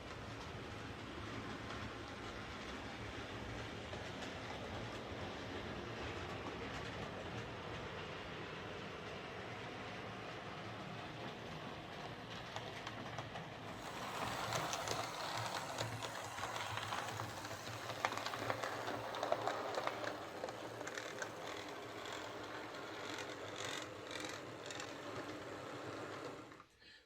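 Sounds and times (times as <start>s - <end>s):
model train motor whir: 13.7s - 26.6s
wheel clicks: 13.8s - 25.1s.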